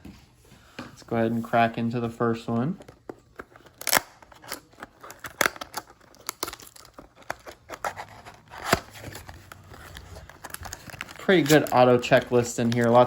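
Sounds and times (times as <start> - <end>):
packaging tearing and crinkling: 3.3 - 13.0.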